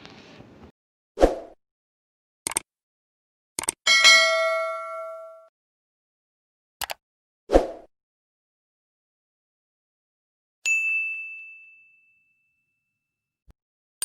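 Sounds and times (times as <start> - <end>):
bright bell ding: 3.9 - 5.5, 10.7 - 12.6.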